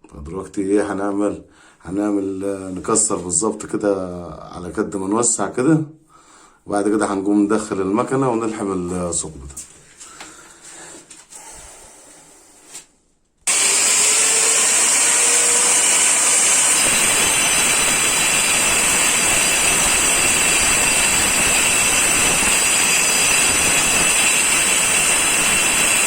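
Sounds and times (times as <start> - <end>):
angle grinder cutting tile: 13.5 - 26.0.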